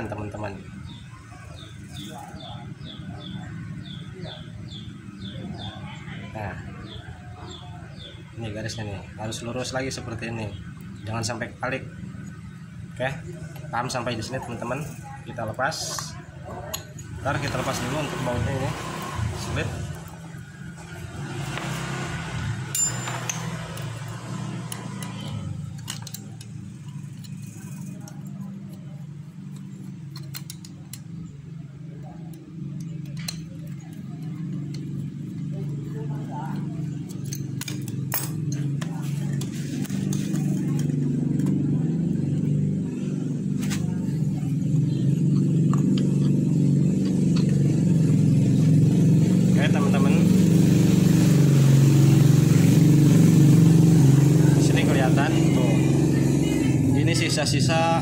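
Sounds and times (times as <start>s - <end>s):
low engine hum: 17.2s - 58.0s
hand tools clinking on bolts: 22.7s - 28.8s, 29.4s - 31.2s, 32.2s - 35.4s, 36.5s - 41.6s.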